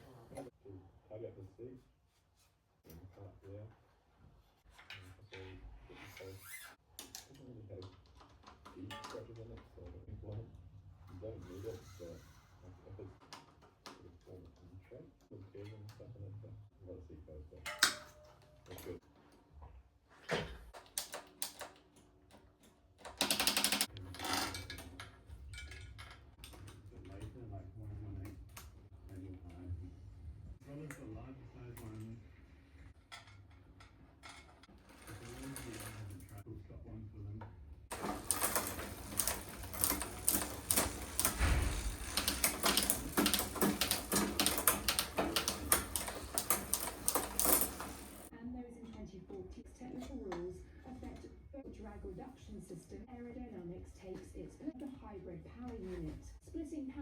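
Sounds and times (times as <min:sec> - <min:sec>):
ratcheting rattle: 0:23.0 - 0:26.8, 0:34.3 - 0:36.4, 0:37.9 - 0:48.3
mechanical clicks: 0:37.9 - 0:48.3.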